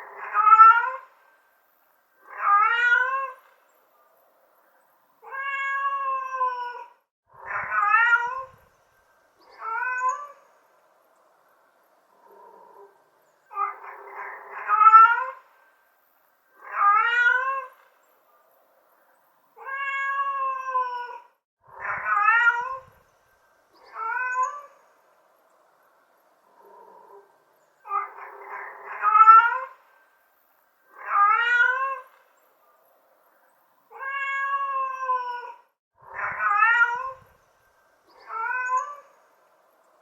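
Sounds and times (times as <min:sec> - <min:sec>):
cat meowing: 0:00.1 - 0:01.1, 0:02.2 - 0:03.5, 0:05.2 - 0:08.6, 0:09.5 - 0:10.4, 0:13.5 - 0:15.4, 0:16.6 - 0:17.8, 0:19.6 - 0:23.0, 0:23.9 - 0:24.7, 0:27.9 - 0:29.8, 0:30.9 - 0:32.2, 0:33.9 - 0:37.3, 0:38.2 - 0:39.2.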